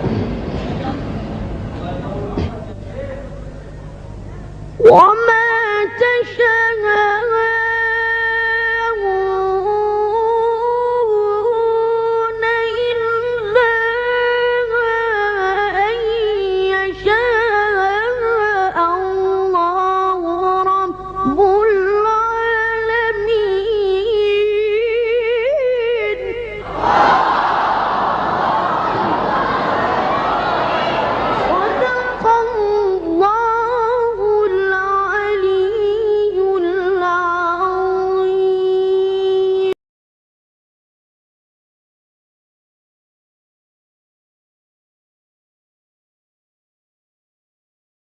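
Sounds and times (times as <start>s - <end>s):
crowd noise: 0.0s - 5.1s, 26.6s - 33.2s
person chanting melodically: 4.8s - 19.8s, 31.2s - 39.8s.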